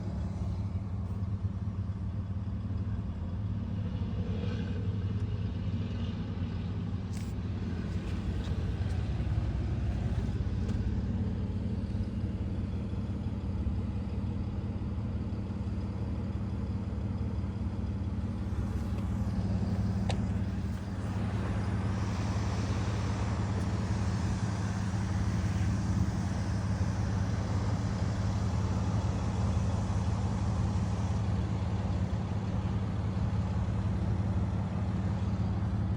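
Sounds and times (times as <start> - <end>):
engine rattle: 0.0 - 35.9
truck engine running: 0.0 - 35.9.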